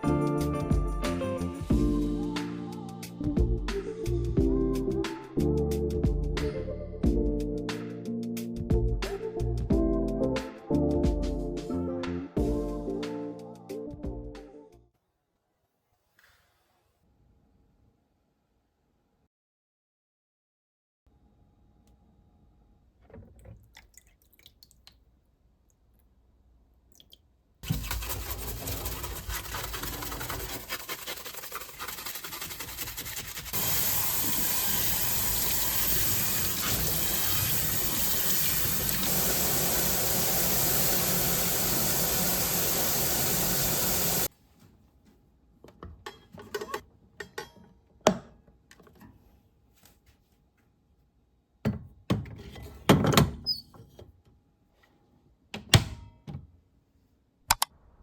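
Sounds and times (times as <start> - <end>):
water running from a tap: 27.6 - 44.3.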